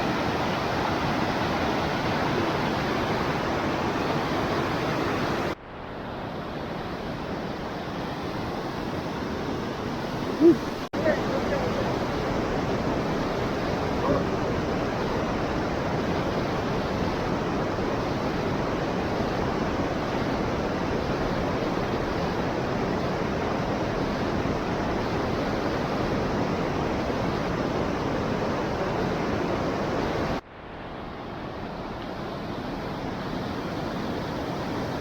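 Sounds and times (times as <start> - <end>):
waterfall roaring: 10.0 - 35.0.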